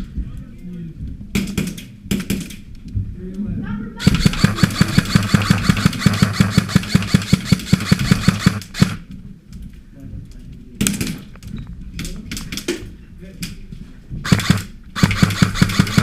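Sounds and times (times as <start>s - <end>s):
airsoft rifle full-auto burst: 4.0s - 9.0s, 14.2s - 16.0s.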